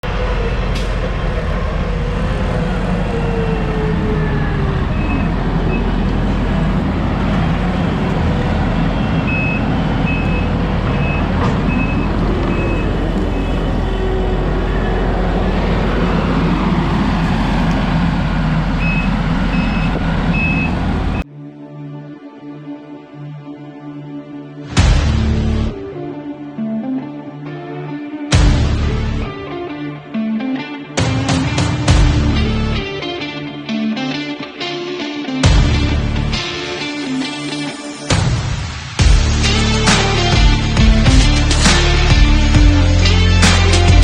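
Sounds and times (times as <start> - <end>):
diesel engine running: 0.0 - 21.2, 31.5 - 32.9, 35.4 - 36.5, 38.1 - 44.0
backup alarm beeping: 4.9 - 6.1, 8.8 - 17.6, 18.8 - 21.2.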